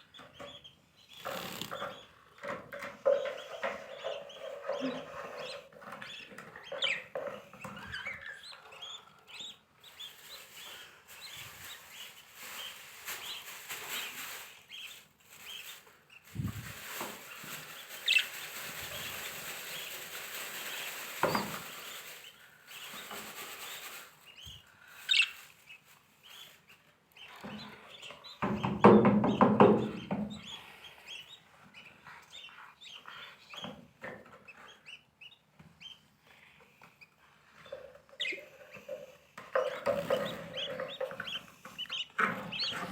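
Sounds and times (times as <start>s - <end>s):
lovebirds chirping: 0.0s - 36.1s, 37.0s - 42.9s
knocking and rustling on nest box: 28.4s - 30.4s.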